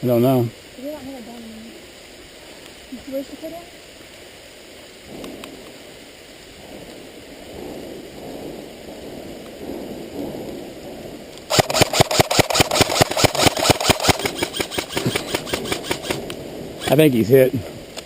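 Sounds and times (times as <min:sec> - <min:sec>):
rain hissing: 0:00.0 - 0:18.0
airsoft gun full-auto fire: 0:11.5 - 0:16.2.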